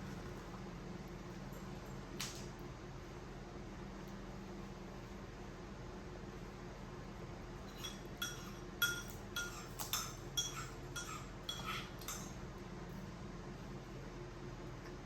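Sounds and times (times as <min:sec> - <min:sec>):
spoon clinking against bowl: 0:07.7 - 0:12.4.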